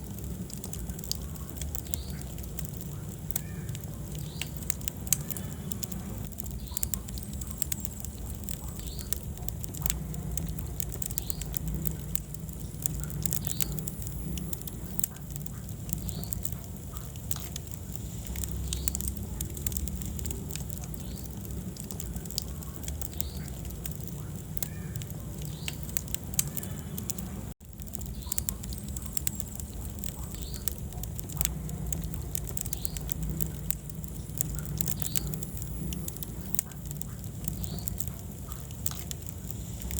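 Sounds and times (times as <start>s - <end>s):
burning wood crackling: 0.0s - 39.9s
fire rumbling: 0.0s - 39.9s.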